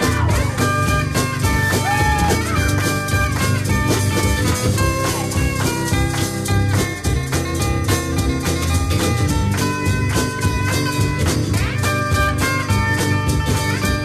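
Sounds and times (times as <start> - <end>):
bass guitar: 0.0 - 14.0
drum kit: 0.0 - 14.0
rock guitar lead with bends: 0.0 - 14.0.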